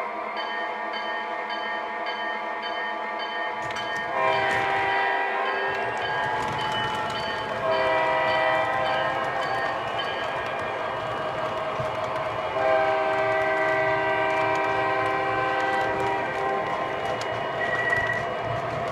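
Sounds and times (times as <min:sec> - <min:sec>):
ringing bell: 0:00.4 - 0:04.4
model locomotive air horn: 0:04.0 - 0:09.4, 0:12.6 - 0:17.0.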